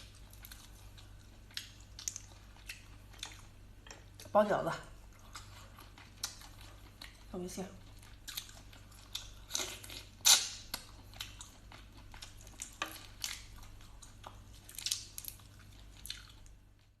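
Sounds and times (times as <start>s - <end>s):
person chewing prawns: 0.0s - 4.3s, 5.1s - 17.0s.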